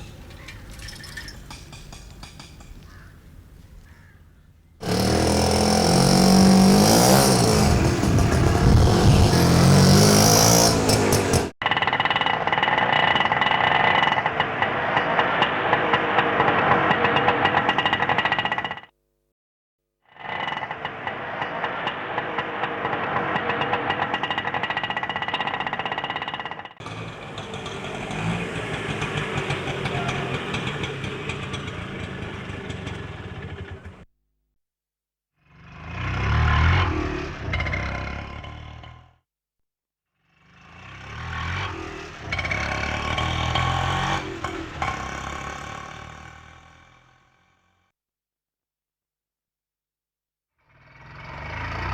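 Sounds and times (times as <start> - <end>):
auto rickshaw engine idling: 0.0 - 18.9, 20.2 - 34.1, 42.1 - 47.4.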